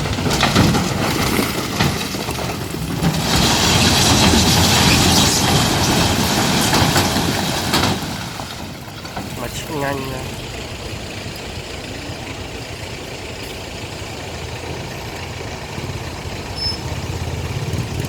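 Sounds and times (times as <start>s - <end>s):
rock sliding out rattling: 0.0s - 10.2s
truck engine rumble: 0.0s - 18.0s.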